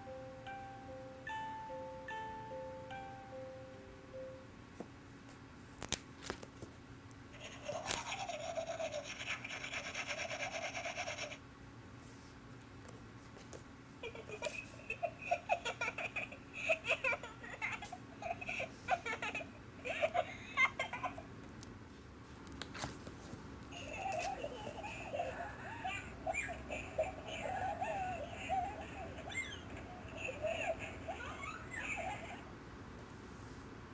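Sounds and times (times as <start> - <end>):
chirpy laugh-like sounds: 7.4 - 11.4, 14.0 - 21.3, 23.7 - 32.5.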